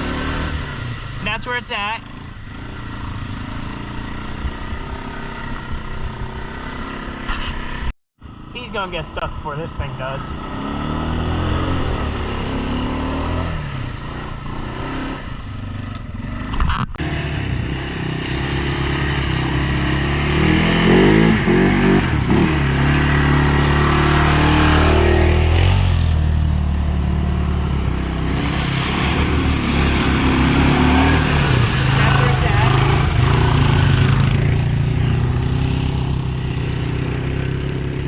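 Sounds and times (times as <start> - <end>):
engine revving under load: 0.0 - 1.2, 10.1 - 15.4, 16.2 - 38.0.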